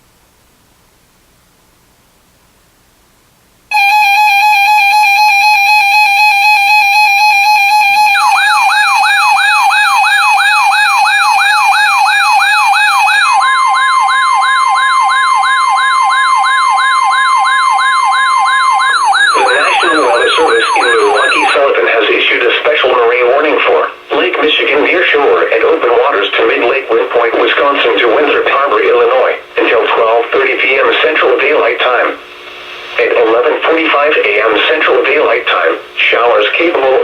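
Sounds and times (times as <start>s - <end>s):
steady single warning tone: 3.7s - 21.6s
rapid warbling siren: 3.7s - 22.0s
buzzy electronic alarm tone: 3.7s - 22.2s
radio static: 19.2s - 37.0s
person speaking: 19.3s - 32.2s.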